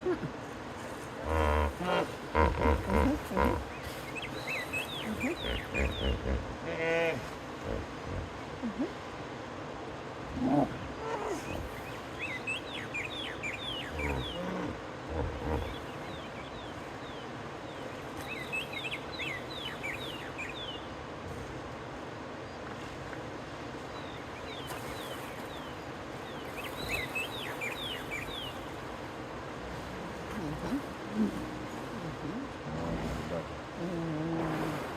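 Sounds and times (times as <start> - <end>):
outdoor background: 0.0 - 34.9
hippos calling: 1.2 - 3.8, 4.9 - 8.5, 13.6 - 16.0
hippo grunts: 14.0 - 15.8, 30.2 - 34.9.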